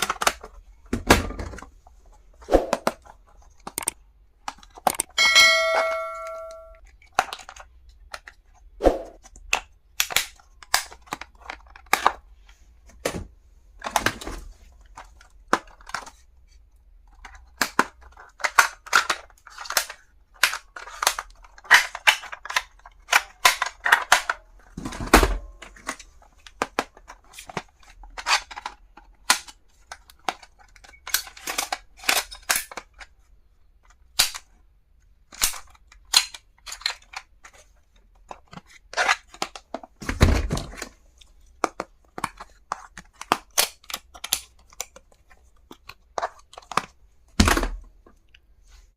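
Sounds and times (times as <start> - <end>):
stationery clicking and tapping: 3.6 - 6.8.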